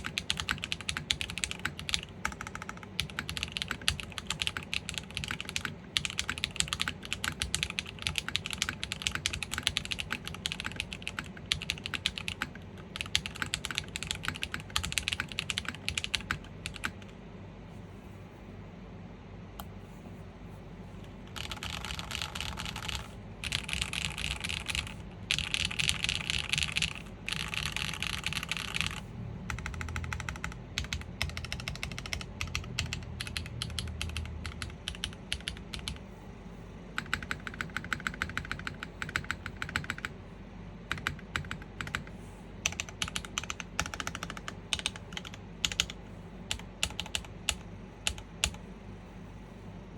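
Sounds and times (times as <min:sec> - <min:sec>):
mechanical keyboard typing: 0:00.0 - 0:17.2, 0:21.3 - 0:36.0, 0:37.0 - 0:40.2, 0:40.9 - 0:48.6.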